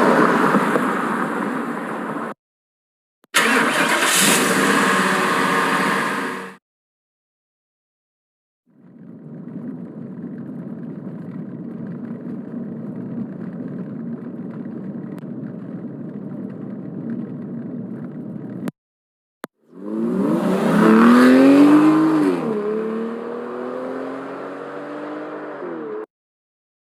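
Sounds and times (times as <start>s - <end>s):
noisy car rumble: 0.0s - 2.4s, 3.4s - 6.6s, 8.7s - 18.8s, 19.4s - 26.1s
car engine revving: 3.4s - 6.6s, 19.7s - 26.1s.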